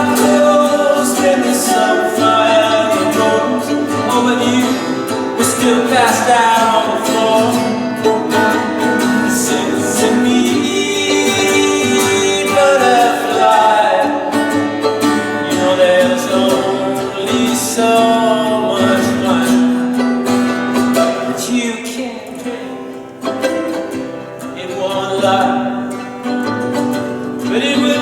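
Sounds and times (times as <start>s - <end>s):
sliding melody line: 0.0s - 21.6s
plucked guitar: 0.0s - 28.0s.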